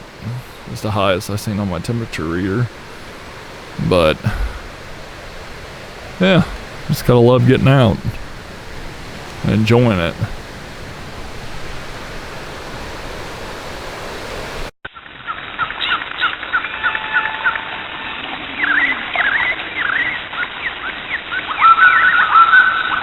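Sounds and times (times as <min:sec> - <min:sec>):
steady rushing noise: 0:00.0 - 0:14.7.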